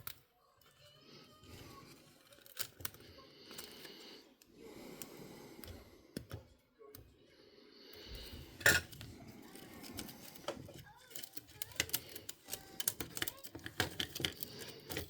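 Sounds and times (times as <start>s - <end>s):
small clicks and taps of tools: 5.0s - 7.1s, 9.9s - 15.0s.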